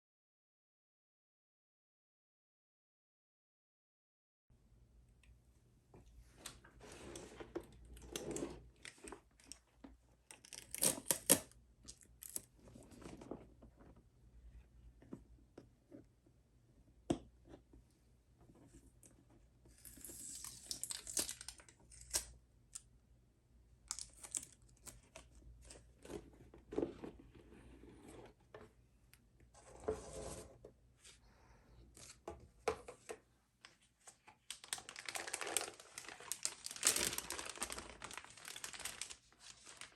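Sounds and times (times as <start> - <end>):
crinkling and tearing: 10.3 - 13.0, 19.9 - 22.3, 34.5 - 39.9.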